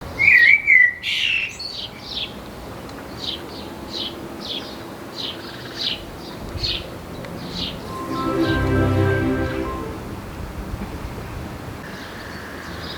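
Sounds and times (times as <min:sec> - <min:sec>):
bird chirping high note: 0:07.8 - 0:10.6
music: 0:07.8 - 0:10.9.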